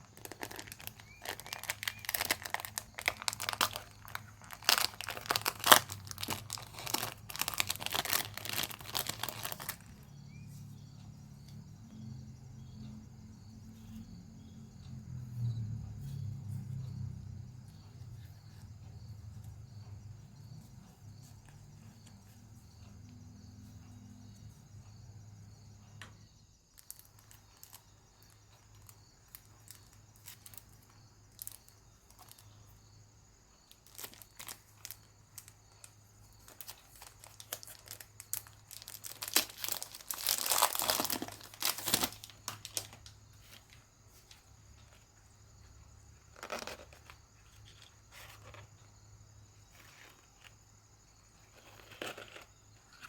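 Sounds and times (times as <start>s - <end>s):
packaging clicks and rustles: 0.0s - 10.0s, 33.8s - 45.0s, 46.3s - 48.7s
packaging tearing and crinkling: 0.1s - 10.0s, 36.5s - 43.0s.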